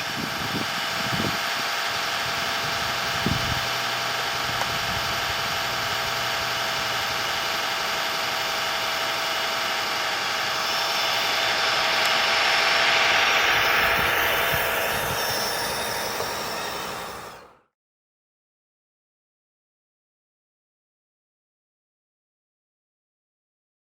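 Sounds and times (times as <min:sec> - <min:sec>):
model truck drivetrain noise: 0:00.0 - 0:17.7
truck engine sound effect: 0:00.0 - 0:17.7.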